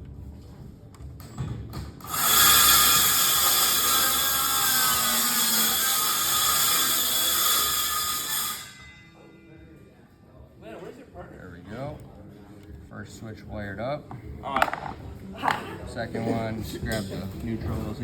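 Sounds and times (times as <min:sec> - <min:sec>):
small power tool motor whining: 0:02.0 - 0:08.7.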